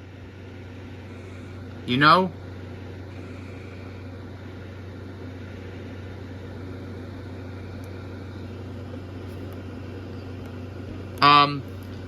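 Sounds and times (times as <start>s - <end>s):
appliance fan hum with hiss: 0.0s - 12.0s.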